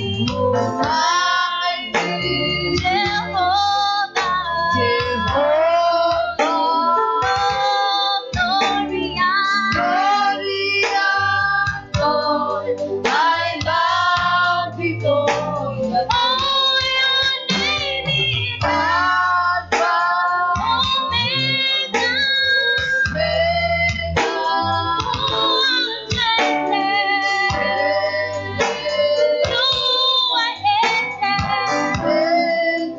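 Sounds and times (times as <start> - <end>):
band with guitar and bass: 0.0 - 32.9
woman singing: 0.0 - 32.9.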